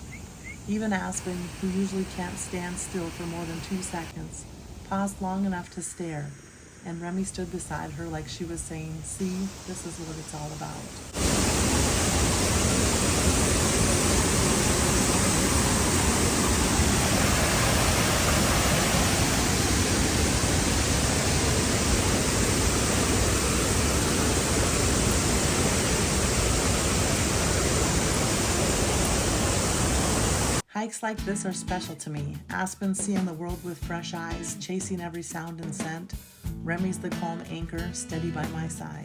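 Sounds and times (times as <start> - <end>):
large waterfall rushing: 11.0 - 30.6.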